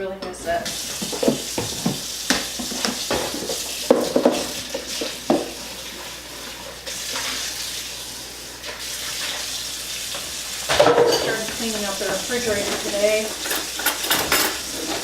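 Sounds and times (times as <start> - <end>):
dishes and utensils clinking: 0.2 - 5.6, 10.7 - 15.0.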